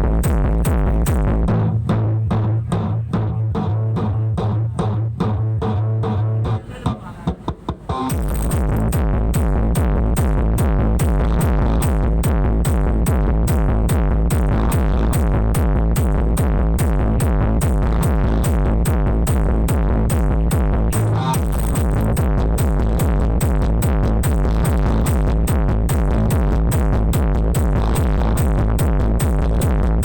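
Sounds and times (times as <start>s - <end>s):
electronic dance music: 0.0s - 30.0s
fast hi-hat clicks: 7.5s - 30.0s.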